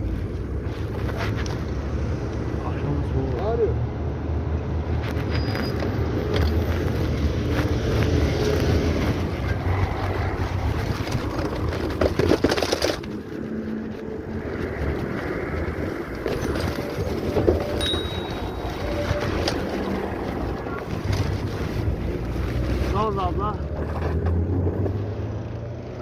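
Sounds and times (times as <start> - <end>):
wind rushing over microphone: 6.0 - 22.9.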